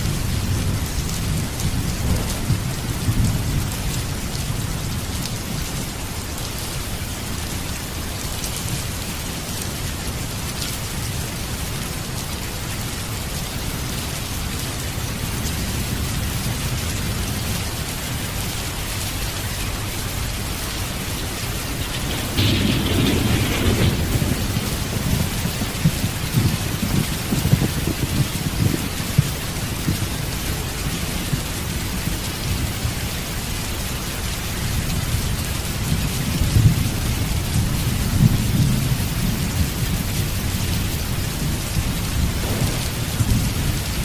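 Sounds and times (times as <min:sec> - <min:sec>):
rolling thunder: 0:00.0 - 0:05.8, 0:14.8 - 0:44.0
heavy rain: 0:00.0 - 0:44.0.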